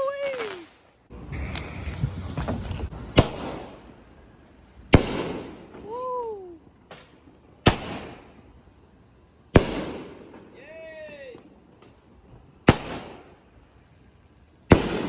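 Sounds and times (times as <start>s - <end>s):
fireworks crackling: 0.0s - 15.0s
firework bangs echoing: 1.4s - 4.1s, 4.9s - 6.0s, 6.9s - 8.6s, 9.5s - 10.6s, 12.6s - 13.8s, 14.7s - 15.0s.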